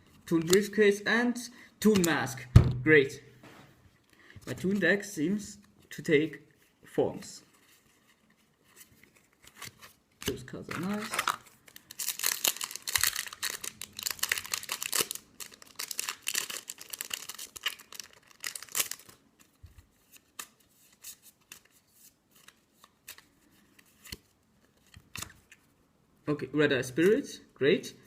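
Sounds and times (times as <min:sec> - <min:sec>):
foil wrapper tearing and crinkling: 0:10.7 - 0:19.2.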